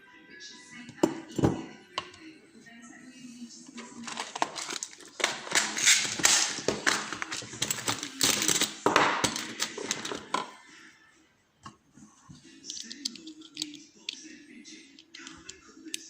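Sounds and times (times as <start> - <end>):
metal lock parts clicking and rattling: 4.0 - 10.3, 12.7 - 14.2, 15.0 - 16.0.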